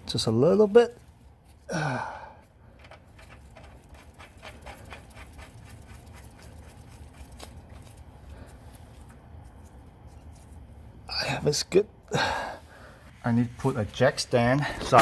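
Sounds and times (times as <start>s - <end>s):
person grunting: 1.7s - 2.3s.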